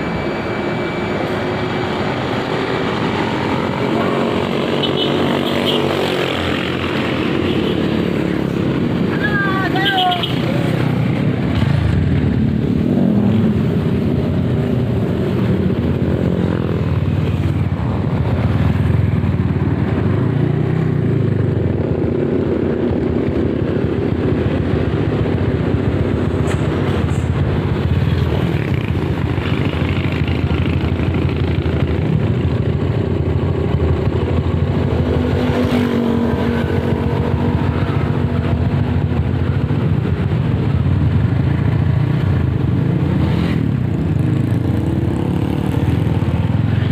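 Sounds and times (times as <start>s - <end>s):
motorcycle engine running: 10.4s - 46.9s.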